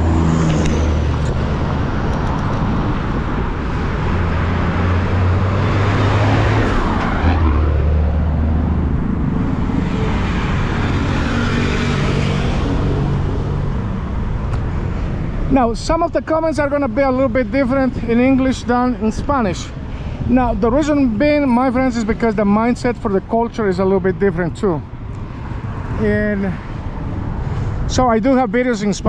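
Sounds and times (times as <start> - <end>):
vehicle passing: 0.0 - 15.5
heavy road traffic: 0.0 - 29.0.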